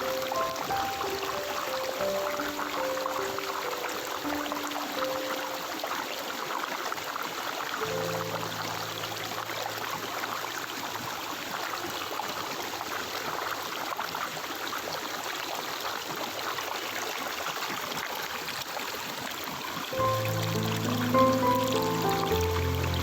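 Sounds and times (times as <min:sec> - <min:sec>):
music with held notes: 0:00.0 - 0:06.0, 0:07.8 - 0:09.8, 0:20.0 - 0:23.0
stream water flowing: 0:00.0 - 0:23.0
low musical drone: 0:20.0 - 0:23.0.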